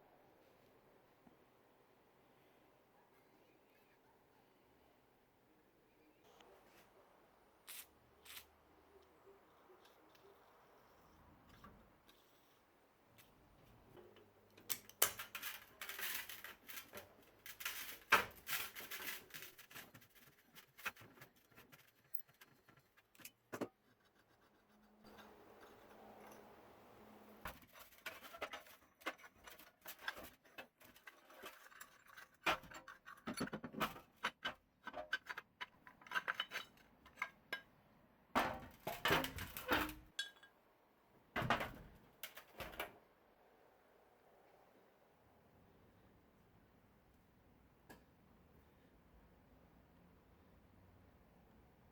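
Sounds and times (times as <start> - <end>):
metal parts clinking and scraping: 14.6 - 23.4, 27.5 - 33.6.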